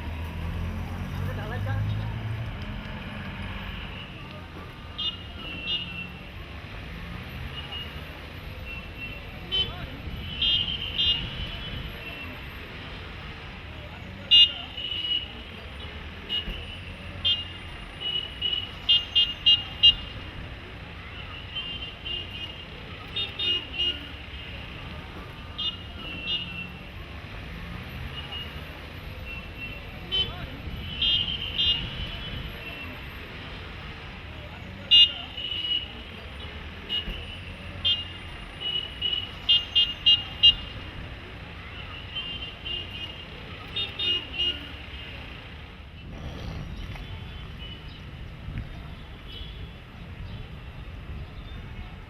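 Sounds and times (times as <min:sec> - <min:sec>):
engines rumbling: 0:00.0 - 0:52.0
vehicle horns tooting: 0:08.7 - 0:12.3, 0:29.3 - 0:33.1, 0:41.8 - 0:45.1
car horns tooting: 0:29.3 - 0:33.1.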